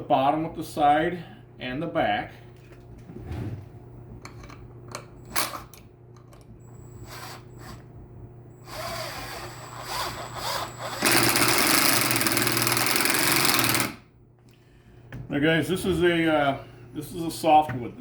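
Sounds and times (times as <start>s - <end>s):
cordless drill driving screw: 6.8s - 7.8s, 8.6s - 13.9s.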